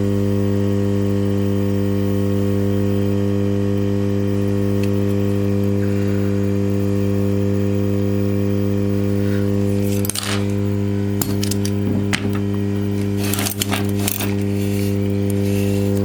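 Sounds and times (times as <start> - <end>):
electrical hum: 0.0 - 16.0
small metal tools clicking: 11.2 - 11.8, 13.0 - 16.0.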